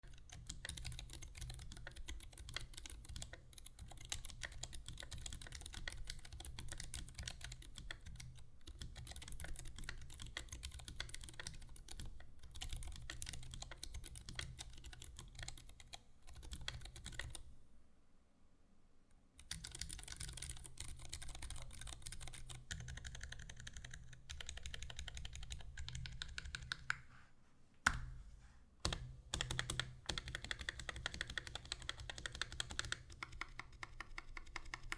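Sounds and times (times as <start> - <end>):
keyboard typing: 0.0 - 17.4, 19.4 - 27.0, 28.8 - 34.9.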